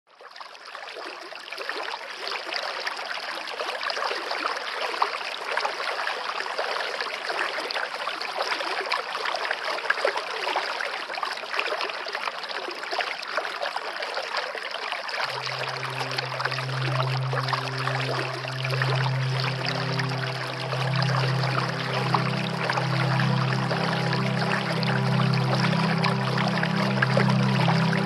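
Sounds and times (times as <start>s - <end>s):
waterfall rushing and splashing: 15.3s - 28.0s.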